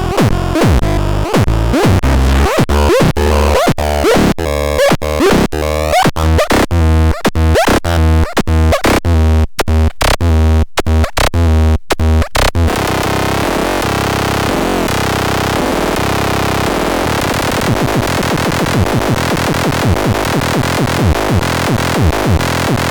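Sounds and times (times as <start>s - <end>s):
heavy bass: 0.0s - 22.9s
stuttering synthesized tones: 12.0s - 22.9s
dense noisy electronic wash: 12.7s - 22.9s.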